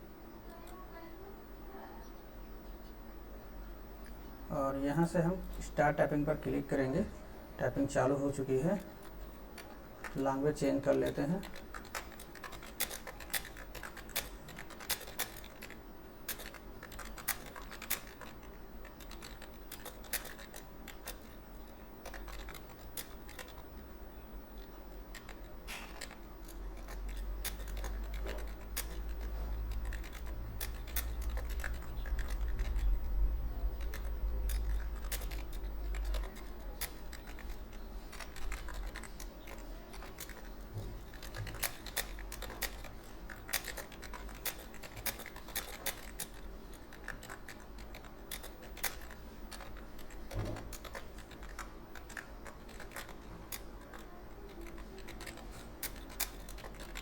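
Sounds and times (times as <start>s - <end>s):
keyboard typing clicks: 8.3s - 23.9s, 24.5s - 57.0s.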